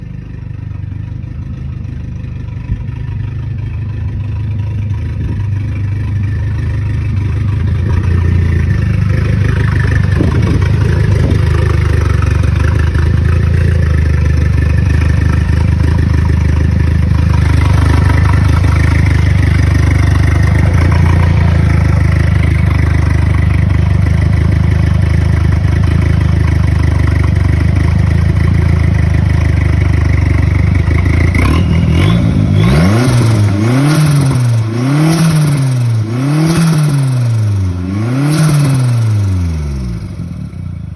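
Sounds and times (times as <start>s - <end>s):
car engine revving: 4.8s - 40.6s
turbo flutter: 5.1s - 24.8s.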